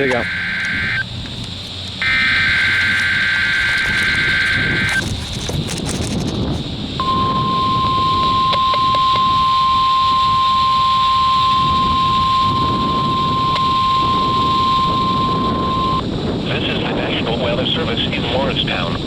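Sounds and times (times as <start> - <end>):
steady alarm tone: 0.0 - 1.1, 2.0 - 5.0, 7.0 - 16.0
low outdoor rumble: 0.0 - 19.0.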